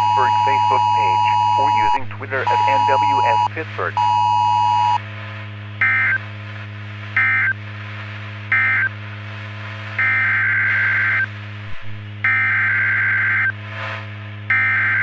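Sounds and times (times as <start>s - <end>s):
two-tone digital data bursts: 0.0s - 5.0s
steady low hum: 0.0s - 15.0s.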